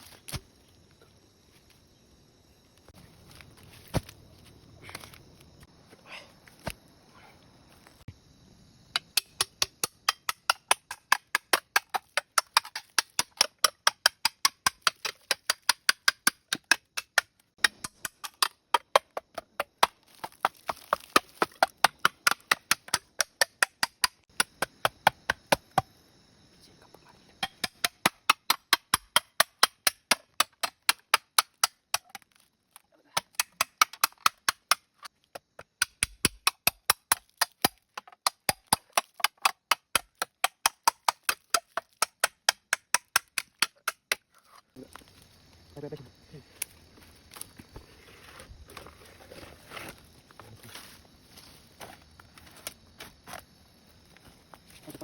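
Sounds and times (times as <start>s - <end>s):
chopping bamboo: 3.8s - 4.2s, 8.9s - 25.9s, 27.4s - 32.5s, 33.1s - 45.0s.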